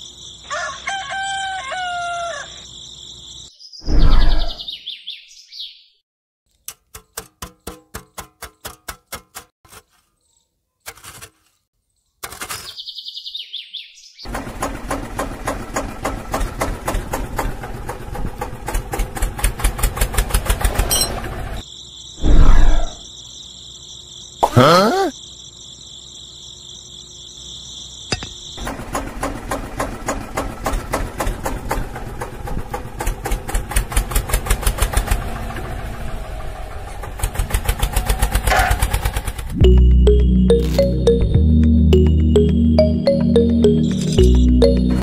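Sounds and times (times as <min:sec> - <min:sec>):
crickets chirring: 0:00.0 - 0:03.8, 0:20.9 - 0:28.7
rooster crowing: 0:00.5 - 0:02.7
rapid clicking and rattling: 0:28.7 - 0:35.3.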